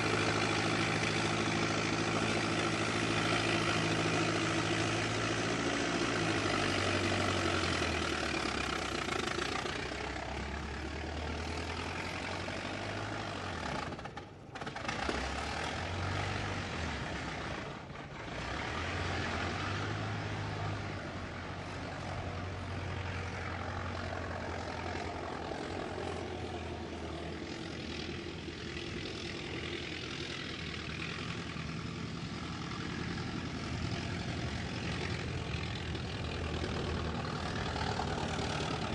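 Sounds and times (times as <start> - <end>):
car engine running: 0.0 - 12.5, 21.2 - 38.9.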